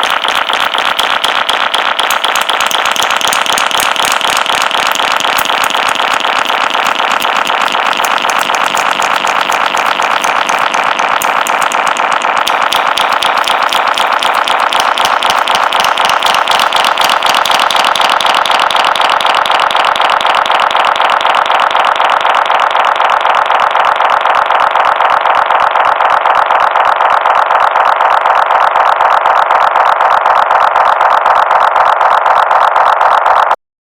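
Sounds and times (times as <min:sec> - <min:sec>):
finger snaps with delay echoes: 0:00.0 - 0:25.8.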